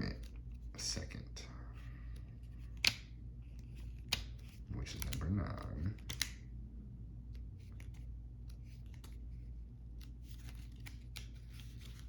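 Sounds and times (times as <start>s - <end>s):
steady low hum: 0.0s - 12.0s
cards clicking and rustling: 2.1s - 6.5s, 7.3s - 12.0s.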